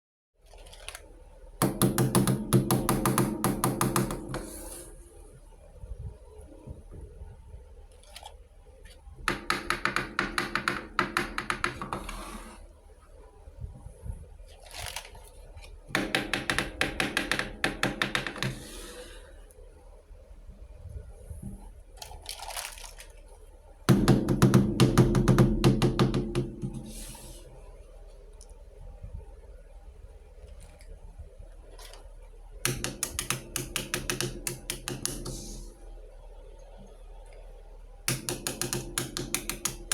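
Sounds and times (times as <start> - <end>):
plastic toy pieces rustling: 14.5 - 15.4, 22.0 - 23.3.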